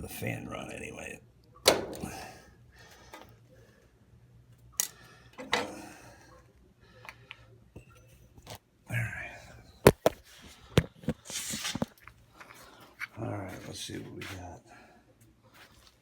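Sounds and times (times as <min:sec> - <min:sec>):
metal tools clicking and clanking: 0:04.8 - 0:05.8
rustle of handling: 0:10.1 - 0:14.4.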